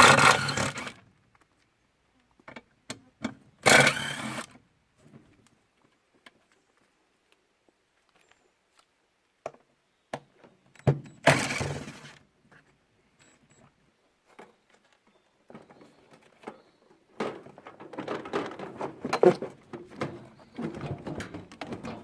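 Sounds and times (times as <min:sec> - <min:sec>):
parts and tools clattering: 0:15.5 - 0:22.0
parts rattling: 0:17.2 - 0:22.0.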